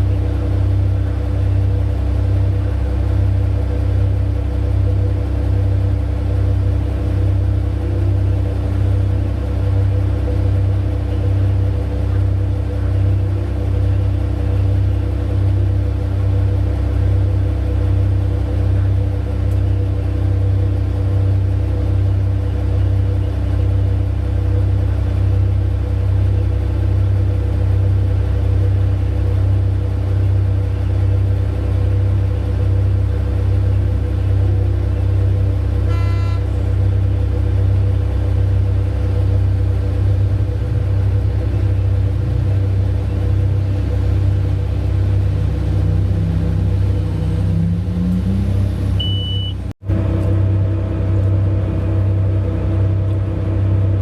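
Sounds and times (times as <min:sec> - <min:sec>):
heavy diesel engines rumbling: 0:00.0 - 0:54.0
brief horn note: 0:35.8 - 0:36.7.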